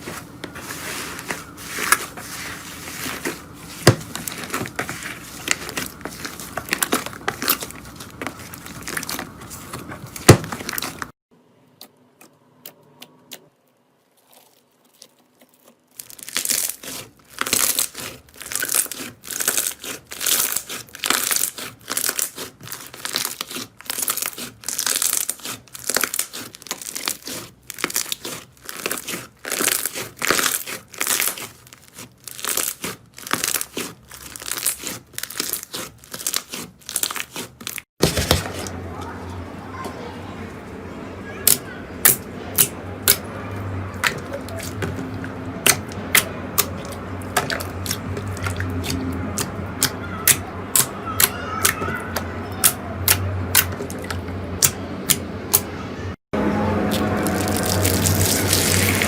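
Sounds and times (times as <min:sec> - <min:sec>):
slime squished by hand crackling: 0:14.2 - 0:37.8, 0:56.9 - 0:59.0.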